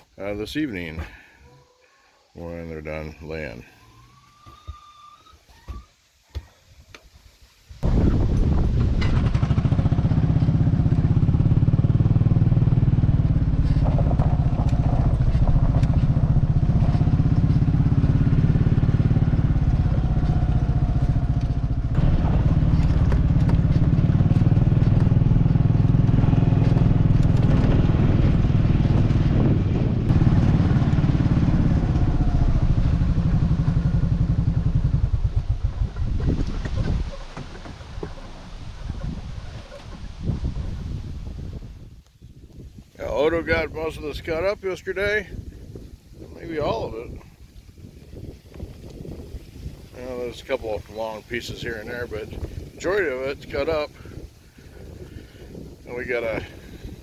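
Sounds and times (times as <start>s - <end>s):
small engine running: 7.8s - 36.2s.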